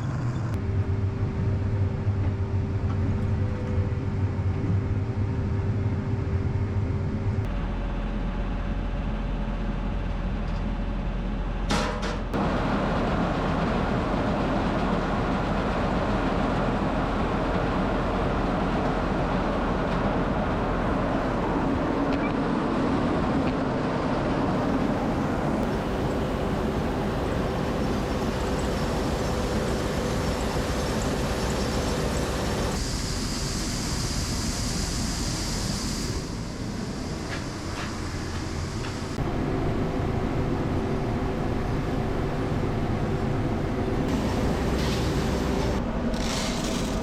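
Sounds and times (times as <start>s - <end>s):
constant hum: 0.0s - 47.0s
tractor engine driving grain auger: 23.4s - 32.8s
high hiss: 26.1s - 39.2s.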